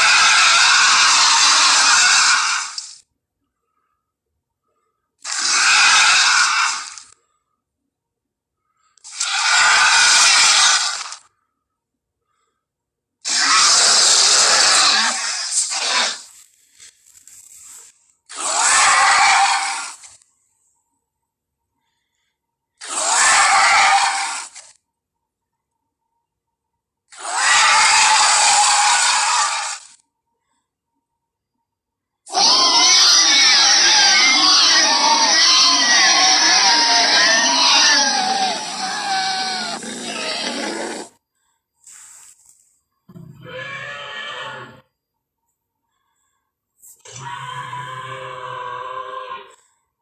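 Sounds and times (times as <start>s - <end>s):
creature growling call: 0.0s - 2.9s, 5.2s - 7.1s, 9.0s - 11.2s, 13.3s - 16.3s, 18.3s - 20.1s, 22.8s - 24.7s, 27.1s - 30.0s, 32.3s - 41.2s, 43.1s - 44.8s, 47.0s - 49.6s
screeching dinosaur roar: 0.0s - 3.0s, 5.2s - 7.2s, 9.0s - 11.3s, 13.2s - 16.3s, 18.3s - 20.2s, 22.8s - 24.7s, 27.1s - 30.0s, 32.3s - 41.2s, 43.1s - 44.8s, 47.0s - 49.7s
breathy hiss: 41.8s - 42.6s.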